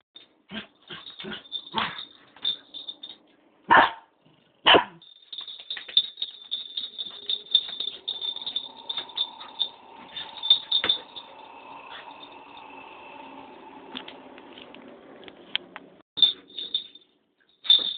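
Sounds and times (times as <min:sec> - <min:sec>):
puppy barking and yipping: 0:03.7 - 0:04.0, 0:04.6 - 0:05.0.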